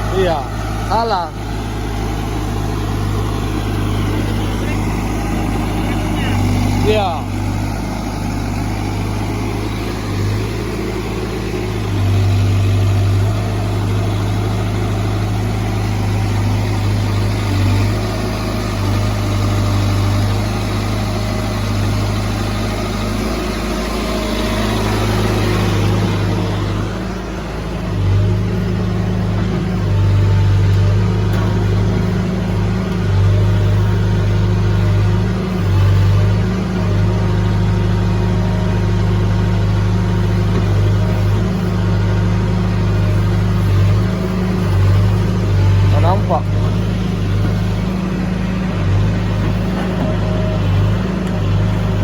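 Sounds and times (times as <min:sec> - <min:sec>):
diesel engine running: 0:00.0 - 0:52.0.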